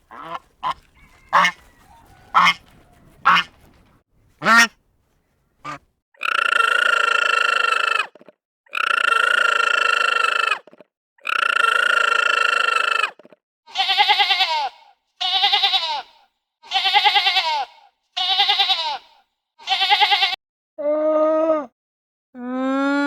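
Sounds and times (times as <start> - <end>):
livestock bleating: 0.1 - 3.6, 13.7 - 20.4.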